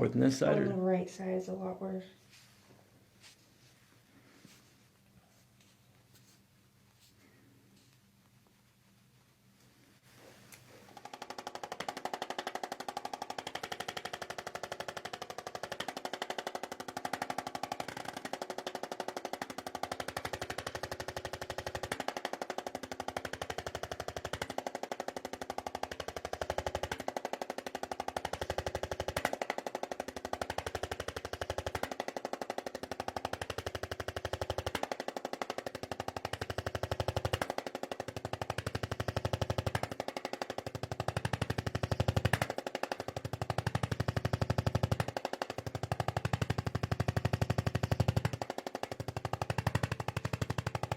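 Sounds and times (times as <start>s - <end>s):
percussion massager buzzing: 10.6s - 50.9s.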